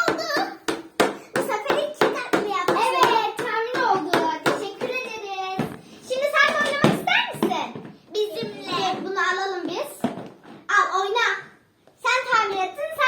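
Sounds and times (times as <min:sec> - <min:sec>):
child chattering: 0:00.0 - 0:07.6, 0:08.2 - 0:09.1
sharp irregular taps: 0:00.0 - 0:07.8.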